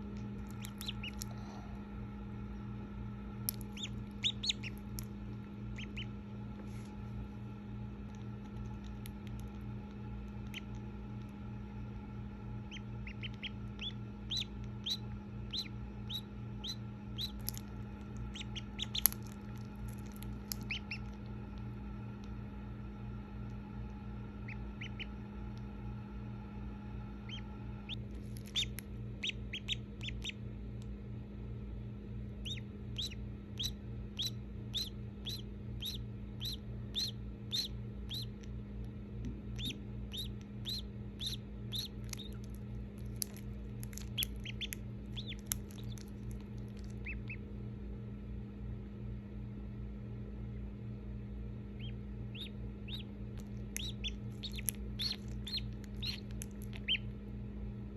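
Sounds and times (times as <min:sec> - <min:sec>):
steady low hum: 0:00.0 - 0:57.9
duckling peeping: 0:00.1 - 0:01.7, 0:03.5 - 0:06.3, 0:08.6 - 0:10.9, 0:12.6 - 0:21.3, 0:24.3 - 0:25.7, 0:27.1 - 0:30.4, 0:32.3 - 0:38.5, 0:39.2 - 0:47.4, 0:51.7 - 0:57.1.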